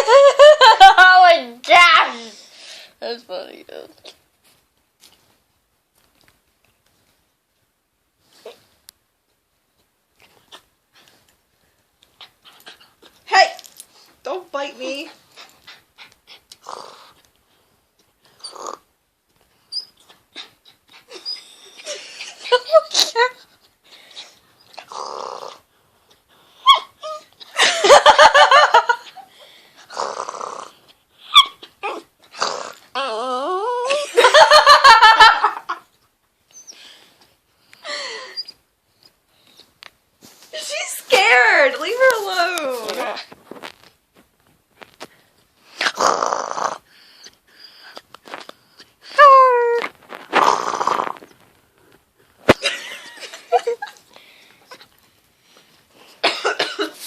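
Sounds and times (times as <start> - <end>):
dog whining and moaning: 18.3 - 18.9, 19.6 - 25.7, 26.5 - 27.5, 29.9 - 34.1, 36.4 - 37.0, 45.7 - 51.3
dog whimpering: 19.7 - 23.4, 26.6 - 27.4, 31.2 - 34.1
person laughing: 52.5 - 54.0.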